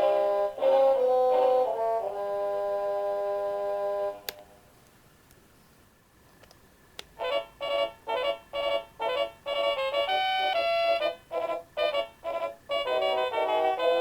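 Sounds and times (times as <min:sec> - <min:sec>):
electronic alarm clock melody: 0:07.2 - 0:14.0.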